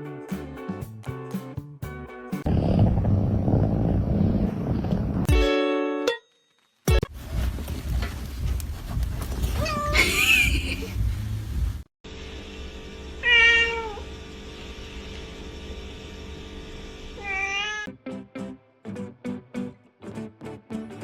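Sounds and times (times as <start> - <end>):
cat meowing: 9.6 - 10.0, 13.2 - 14.0, 17.2 - 17.9
plucked guitar music: 17.9 - 21.0.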